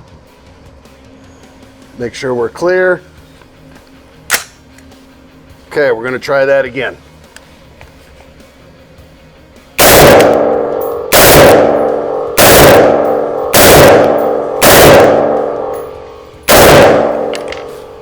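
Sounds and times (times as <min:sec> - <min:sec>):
rifle action cycling: 0:04.3 - 0:04.6, 0:09.8 - 0:15.6, 0:16.5 - 0:17.8
rifle shots ringing out: 0:09.8 - 0:18.0.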